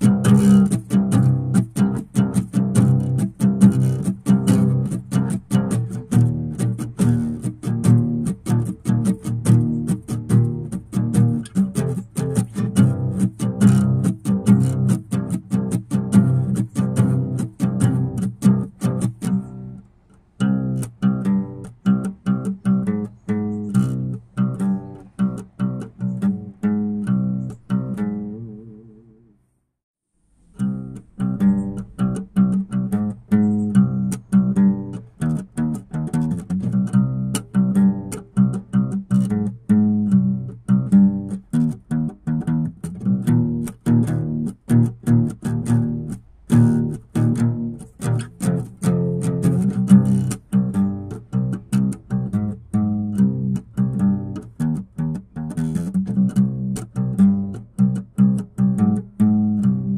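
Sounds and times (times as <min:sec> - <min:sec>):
rapidly plucked low strings music: 0:00.0 - 0:29.3, 0:30.5 - 0:59.9.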